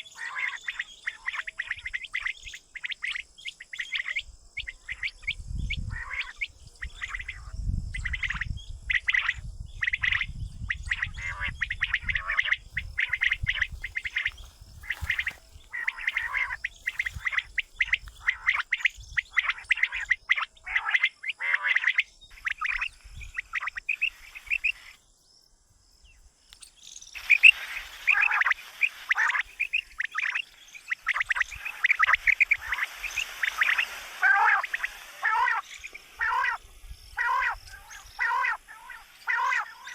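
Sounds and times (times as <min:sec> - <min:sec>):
quail chirping calls: 0:00.0 - 0:25.0, 0:26.6 - 0:39.9
hiss: 0:27.2 - 0:36.3.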